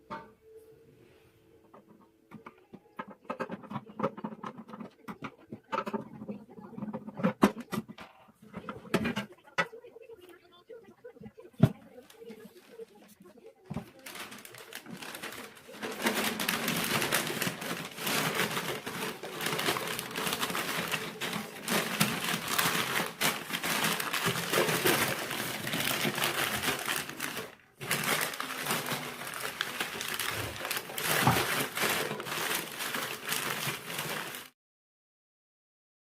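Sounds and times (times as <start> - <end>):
material crinkling and rustling: 11.2 - 34.6.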